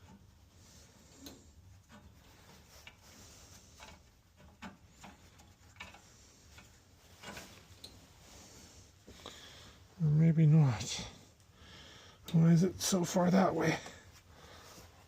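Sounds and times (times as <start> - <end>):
light clicks of metal parts: 0.0 - 9.4, 12.2 - 14.3.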